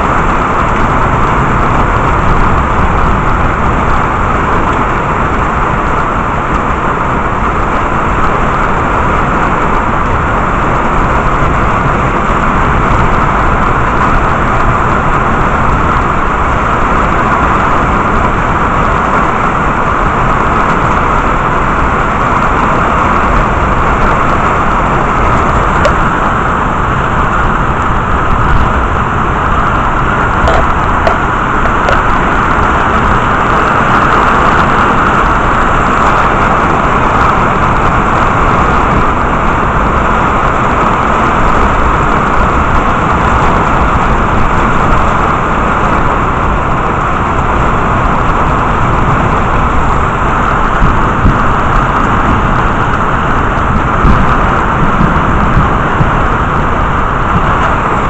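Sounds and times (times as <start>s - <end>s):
heavy rain: 0.0s - 58.0s.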